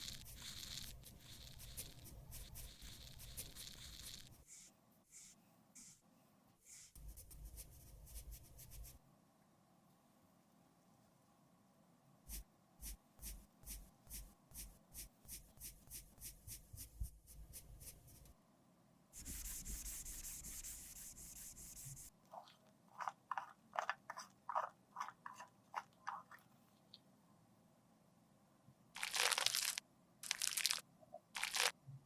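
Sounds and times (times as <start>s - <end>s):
product crunching: 29.0s - 31.7s.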